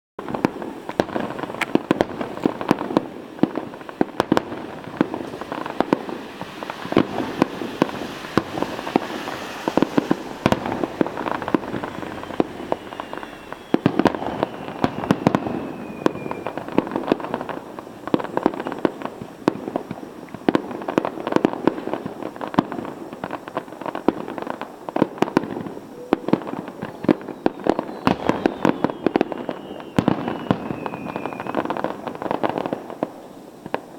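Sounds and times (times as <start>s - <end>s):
fireworks bangs and crackling: 0.2s - 33.9s
faint falling whistle: 11.3s - 16.6s, 25.9s - 31.8s.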